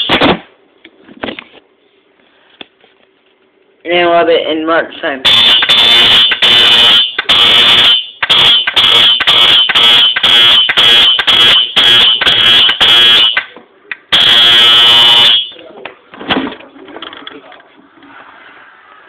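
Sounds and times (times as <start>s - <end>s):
fire alarm horn buzzing: 0.0s - 0.2s, 5.2s - 13.5s, 14.1s - 15.6s.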